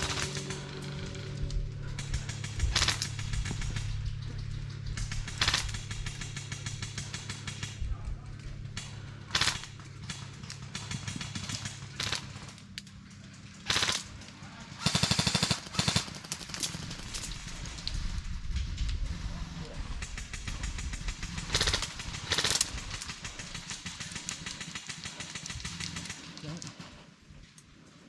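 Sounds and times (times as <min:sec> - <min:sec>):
airsoft guns firing bursts: 0:00.0 - 0:27.1.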